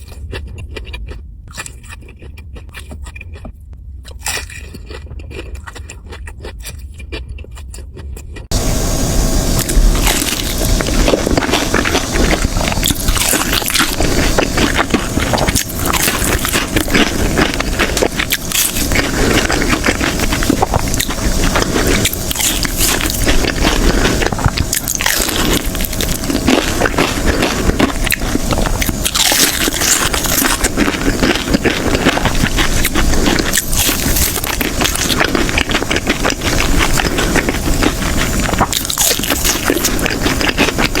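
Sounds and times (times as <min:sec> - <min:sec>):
person chewing crunchy food: 0:00.0 - 0:41.0.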